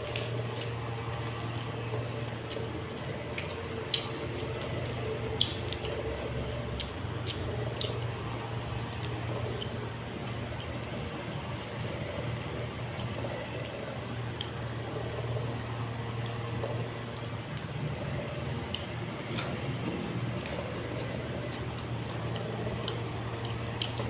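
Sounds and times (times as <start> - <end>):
wet chewing and crunching: 0.0 - 11.7, 18.6 - 24.0
steady low hum: 0.0 - 24.0.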